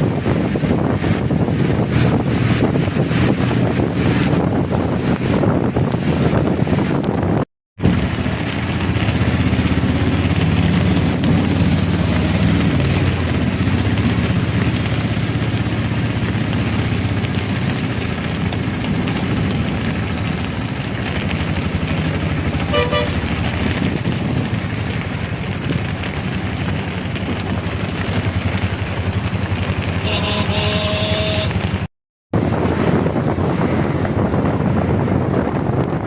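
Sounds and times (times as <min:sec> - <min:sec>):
road traffic: 0:00.0 - 0:36.0
vehicle horn honking: 0:22.7 - 0:23.2, 0:30.0 - 0:31.7.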